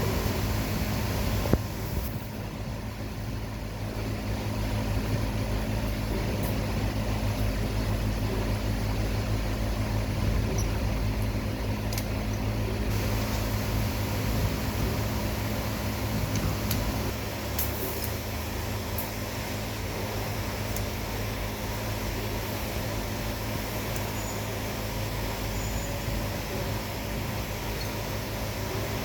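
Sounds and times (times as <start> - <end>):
low mechanical hum: 0.0 - 29.0.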